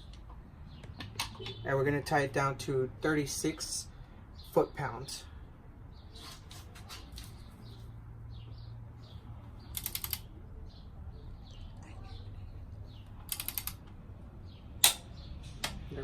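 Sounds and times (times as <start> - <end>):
torque wrench ratchet clicking: 9.8 - 10.2, 13.3 - 13.8.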